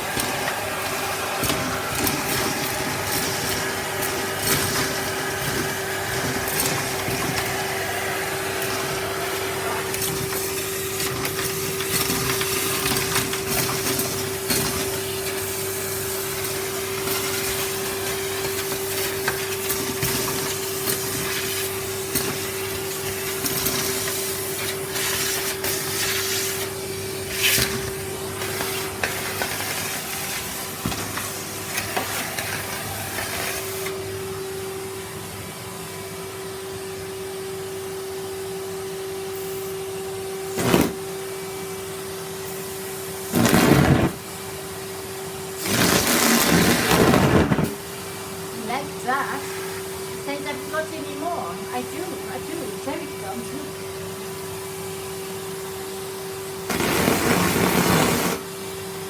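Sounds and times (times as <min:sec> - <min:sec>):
vacuum cleaner motor whine: 0:00.0 - 0:59.0
debris rattling up hose: 0:45.6 - 0:47.8.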